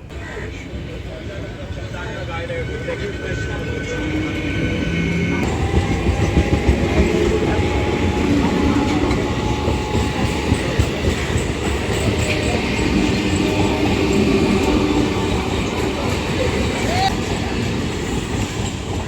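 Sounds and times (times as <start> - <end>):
train wheels clattering over rails: 4.9 - 19.0.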